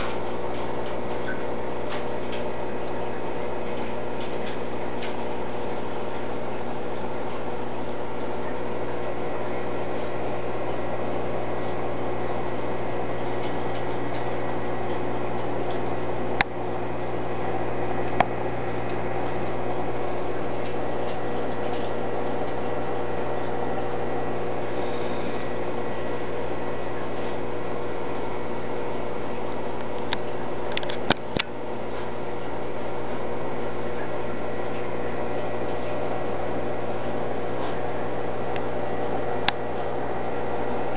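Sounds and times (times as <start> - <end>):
aquarium equipment hum: 0.0 - 40.9.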